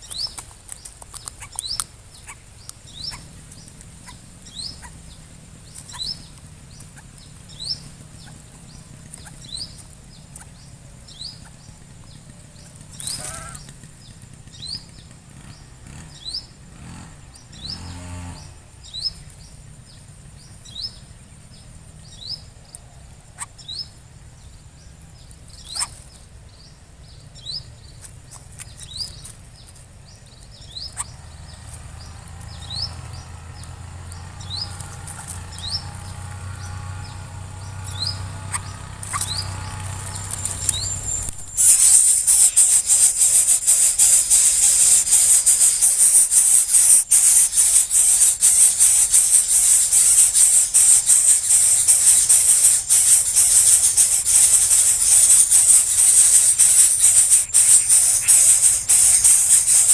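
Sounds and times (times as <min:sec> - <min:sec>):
short high rising chirps: 0:30.7 - 0:59.9.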